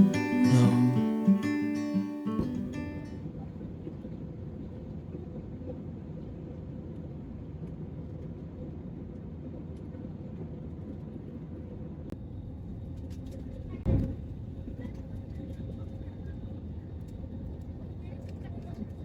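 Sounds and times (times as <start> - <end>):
faint steady hum: 0.0 - 3.1.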